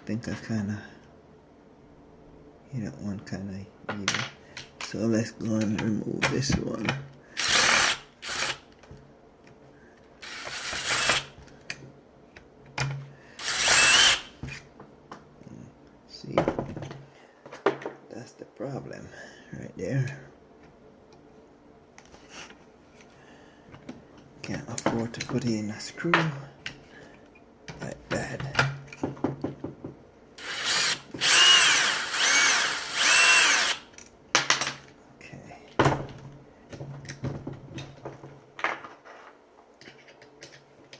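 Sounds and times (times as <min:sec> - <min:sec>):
power drill bursts: 0:07.4 - 0:08.6, 0:10.2 - 0:11.3, 0:13.4 - 0:14.3, 0:30.4 - 0:33.9.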